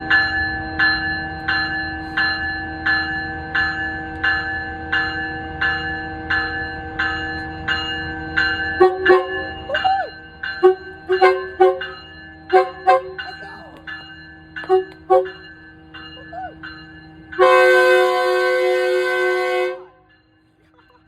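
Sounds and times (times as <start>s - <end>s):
railroad bell ringing: 0.0s - 21.0s
train horn blasts: 8.7s - 9.7s, 10.6s - 13.4s, 14.7s - 15.5s, 17.4s - 20.1s.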